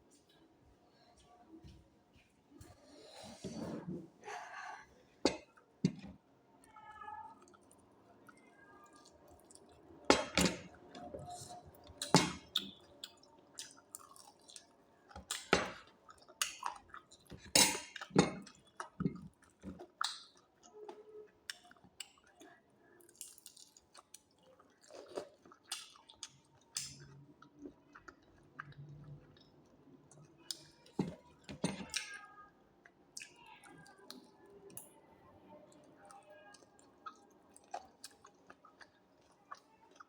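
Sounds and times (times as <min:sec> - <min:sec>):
person chewing food: 0:07.4 - 0:32.2, 0:35.8 - 0:40.0.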